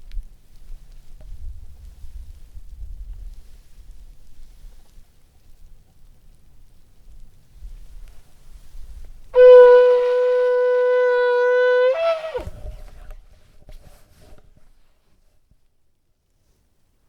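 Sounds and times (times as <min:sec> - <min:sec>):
shofar blowing long note: 0:09.4 - 0:12.5.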